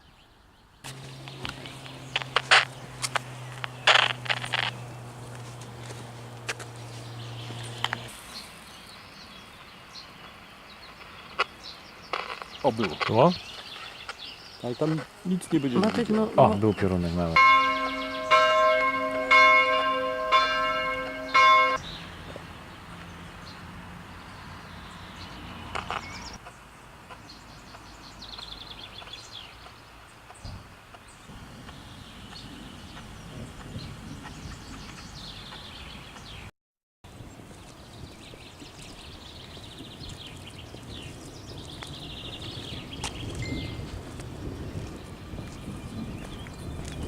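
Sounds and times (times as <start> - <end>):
small birds singing: 0.0 - 36.5, 37.1 - 47.0
low outdoor rumble: 0.9 - 8.2
church bell tolling: 17.4 - 21.8.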